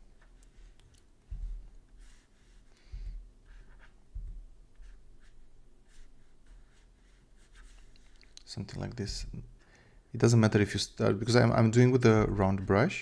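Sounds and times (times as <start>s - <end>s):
soft low thumps: 1.2s - 1.8s, 2.9s - 3.3s, 4.1s - 4.8s, 8.8s - 9.5s
stylus scratching on tablet: 4.8s - 8.3s.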